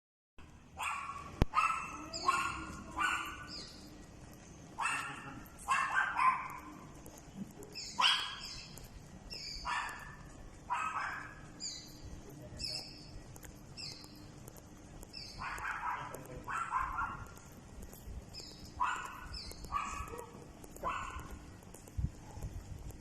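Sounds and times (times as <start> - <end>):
dog barking: 0.8 - 3.9, 4.7 - 7.2, 7.9 - 8.7, 9.6 - 11.5, 15.2 - 17.9, 18.8 - 21.6.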